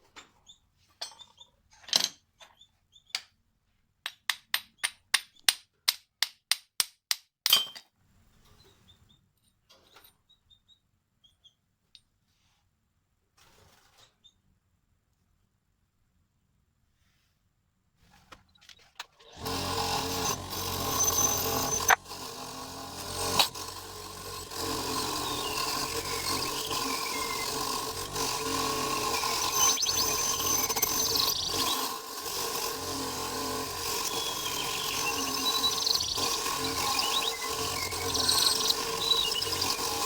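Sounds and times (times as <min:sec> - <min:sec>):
electric power tool running: 0:19.3 - 0:40.0.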